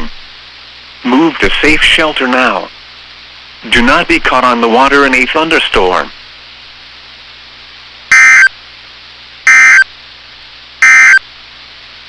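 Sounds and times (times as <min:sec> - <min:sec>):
faint radio hiss: 0:00.0 - 0:12.0
buzzing digital data tones: 0:08.1 - 0:08.5, 0:09.5 - 0:09.9, 0:10.8 - 0:11.2.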